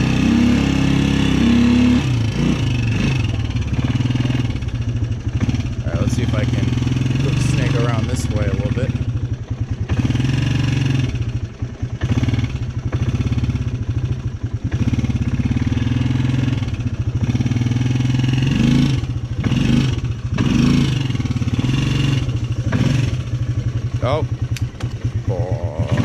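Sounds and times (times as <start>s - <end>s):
quad bike engine revving: 0.0s - 26.0s.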